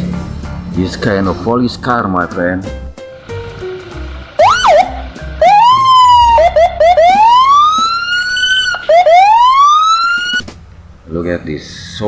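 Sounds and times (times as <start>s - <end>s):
police siren: 3.7s - 10.4s.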